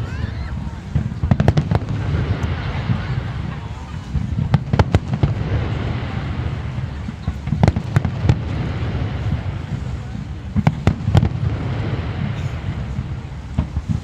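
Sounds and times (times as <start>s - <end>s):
fireworks bangs: 0.0s - 14.0s.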